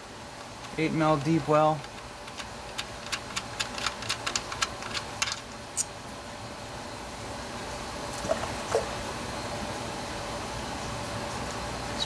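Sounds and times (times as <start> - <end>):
ratchet wrench clicking: 0.6 - 5.9.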